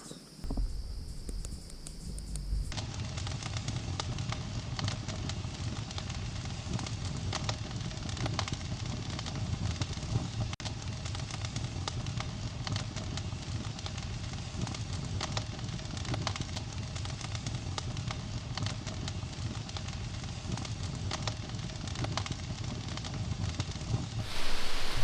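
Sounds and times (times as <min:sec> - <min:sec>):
campfire crackling and popping: 0:00.4 - 0:25.0
low steady rumble: 0:00.5 - 0:02.8, 0:24.2 - 0:25.0.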